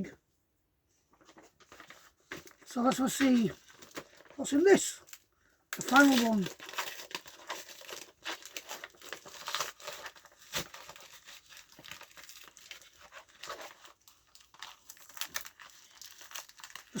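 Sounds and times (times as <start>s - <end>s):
packaging crinkling and rustling: 1.1s - 17.0s
packaging tearing: 1.7s - 4.4s, 5.0s - 17.0s.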